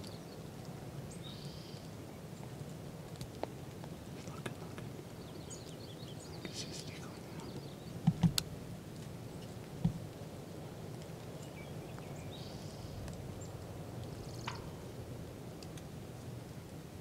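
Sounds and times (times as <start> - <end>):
faint bird chirps: 4.2 - 8.0, 11.4 - 13.5.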